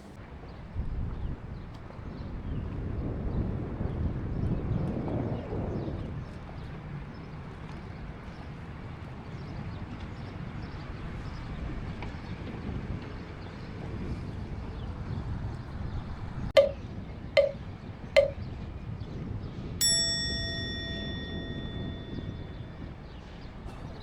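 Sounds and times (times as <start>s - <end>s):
ringing ding: 16.6s - 16.8s, 17.4s - 17.6s, 18.2s - 18.4s, 19.8s - 23.0s.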